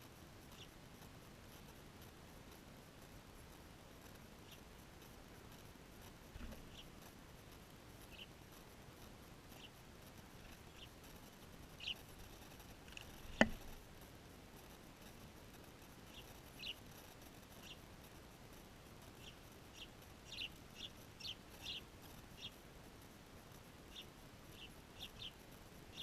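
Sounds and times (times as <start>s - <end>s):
small birds chirping: 0.0s - 26.0s
sharp click: 12.9s - 13.8s.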